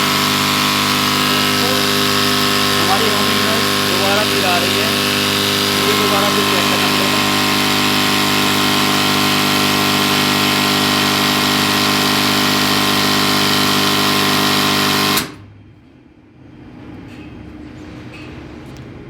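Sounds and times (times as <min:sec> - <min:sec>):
voltage stabilizer humming: 0:00.0 - 0:15.4.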